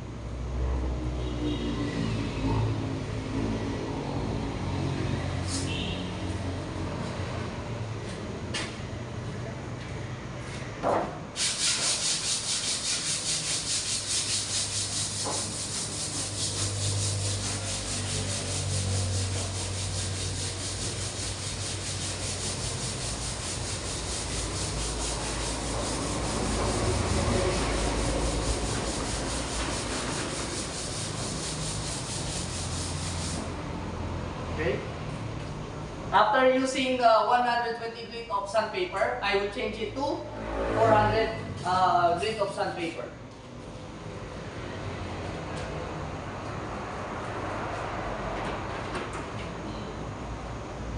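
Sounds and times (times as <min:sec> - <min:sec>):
sandpaper rubbing back and forth: 0:11.4 - 0:33.5.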